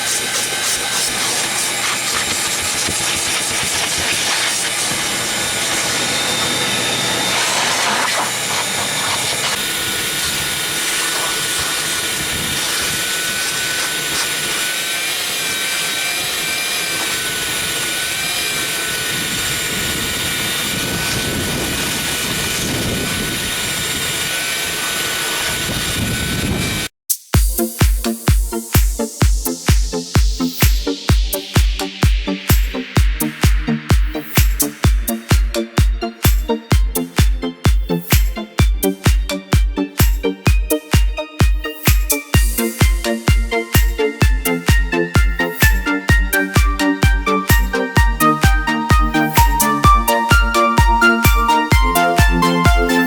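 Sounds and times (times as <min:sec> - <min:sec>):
vacuum cleaner motor whining: 0:00.0 - 0:26.9.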